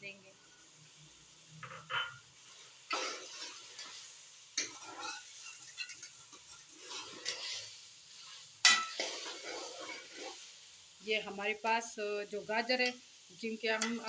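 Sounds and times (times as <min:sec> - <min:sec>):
faint sizzle: 0:00.0 - 0:14.0
spoon stirring and scraping pot: 0:01.6 - 0:10.5, 0:13.7 - 0:14.0.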